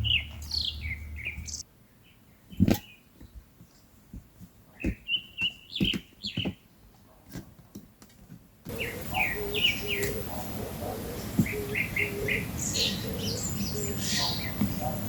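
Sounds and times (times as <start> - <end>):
high flat chirping calls: 8.7 - 15.0
hissy background: 8.7 - 15.0.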